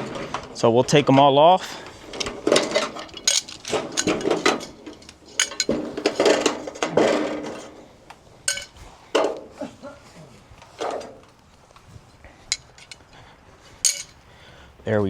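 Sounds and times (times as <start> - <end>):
metallic clinks on aluminium gutter: 0.0 - 9.5, 12.4 - 13.1, 13.8 - 14.2.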